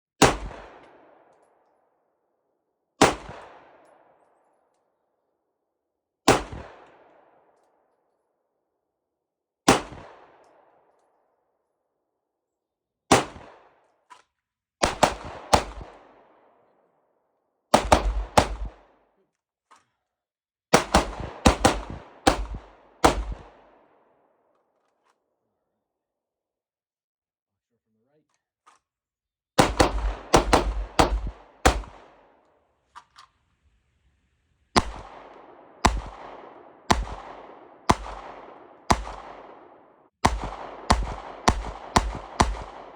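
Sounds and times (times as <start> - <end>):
pistol shots with echo: 0.2 - 1.6, 3.0 - 4.2, 6.3 - 7.6, 9.7 - 10.9, 13.1 - 13.8, 14.8 - 16.8, 17.7 - 19.0, 20.7 - 24.3, 29.6 - 32.5, 34.8 - 42.9.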